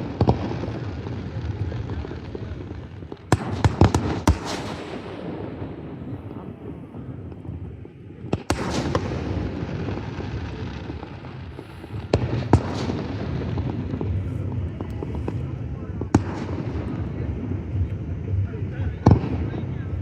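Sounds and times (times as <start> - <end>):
fireworks bangs: 0.0 - 20.0
low rumble: 4.8 - 20.0.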